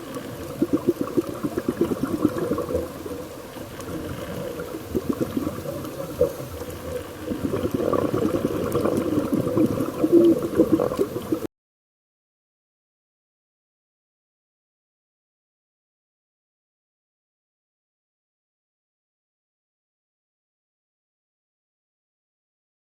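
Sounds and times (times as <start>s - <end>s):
underwater diver bubbles: 0.0s - 11.5s.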